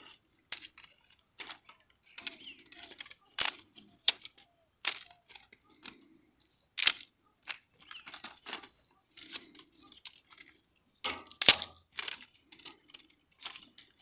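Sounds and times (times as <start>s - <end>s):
wood knocking and cracking: 0.0s - 5.6s, 11.0s - 13.9s.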